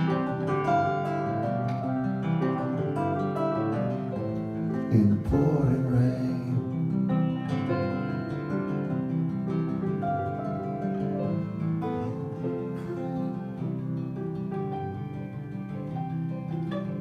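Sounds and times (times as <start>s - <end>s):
electric guitars: 0.0s - 17.0s.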